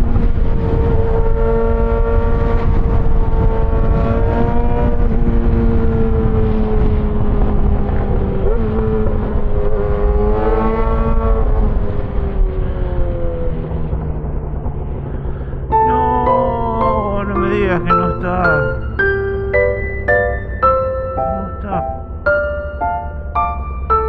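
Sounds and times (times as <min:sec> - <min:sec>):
wind noise on microphone: 0:00.0 - 0:16.4.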